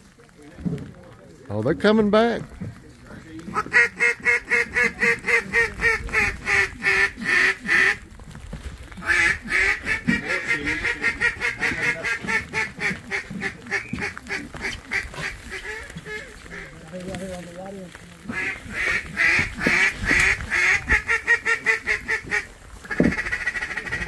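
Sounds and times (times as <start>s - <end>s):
duck call quacks: 3.5s - 8.0s, 9.0s - 16.7s, 18.3s - 24.0s.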